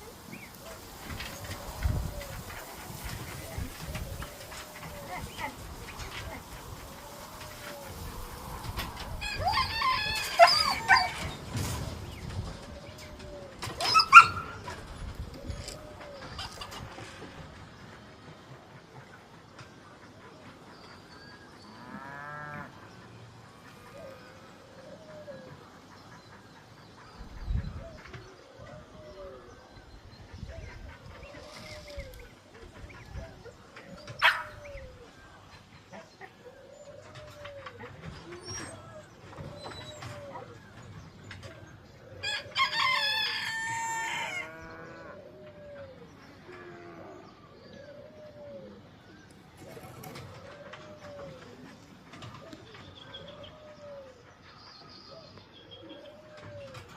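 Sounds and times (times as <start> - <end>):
faint outdoor background noise: 0.0 - 56.9
cow mooing: 21.7 - 22.7.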